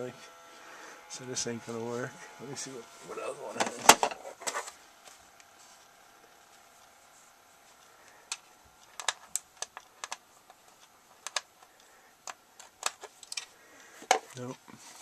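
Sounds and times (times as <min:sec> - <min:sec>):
screwdriver bits and case clicking: 0:08.3 - 0:13.5.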